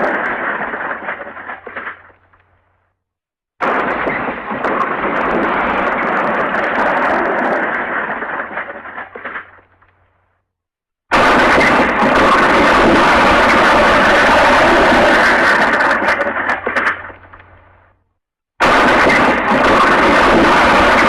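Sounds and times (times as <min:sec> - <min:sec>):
cartoon crash: 0:11.1 - 0:17.3, 0:18.6 - 0:21.0
loud steady rushing noise: 0:11.4 - 0:16.0.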